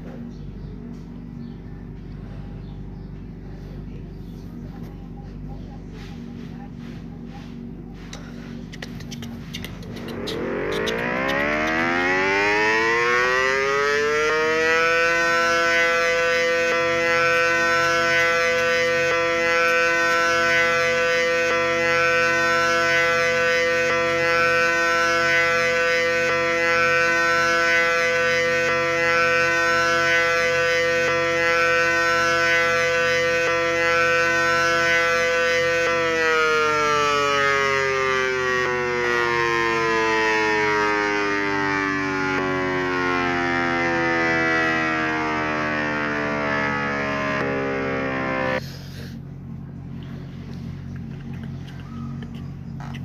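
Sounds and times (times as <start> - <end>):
tornado warning siren wailing: 9.8 - 48.6.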